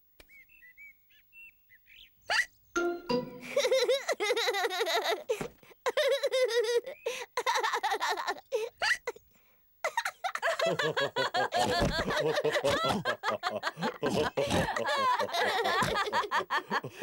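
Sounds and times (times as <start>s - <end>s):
cartoon voices laughing together: 3.4s - 8.5s, 9.9s - 17.0s.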